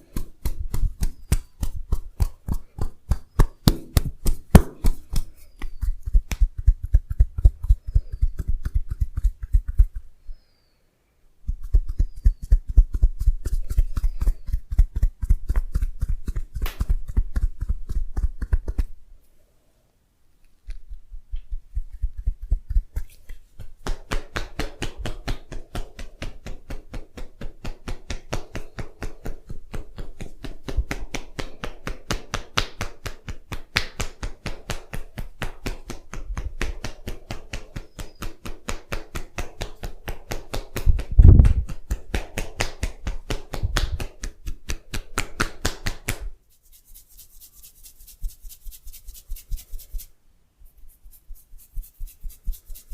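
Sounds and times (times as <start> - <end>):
hands striking body in massage: 0.0 - 10.0, 11.5 - 18.9, 21.4 - 46.3.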